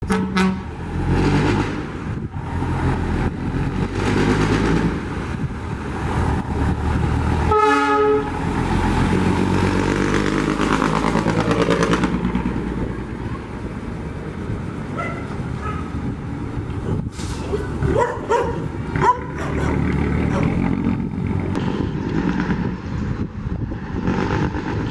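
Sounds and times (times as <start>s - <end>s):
truck horn blast: 0.0s - 1.3s, 7.4s - 8.6s
diesel truck engine revving: 0.0s - 24.9s.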